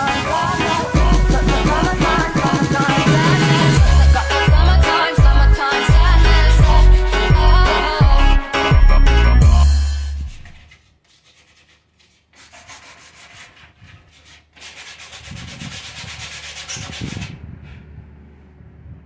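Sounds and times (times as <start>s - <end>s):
sandpaper rubbing: 0.0s - 8.7s, 9.5s - 17.4s
music: 0.0s - 10.6s.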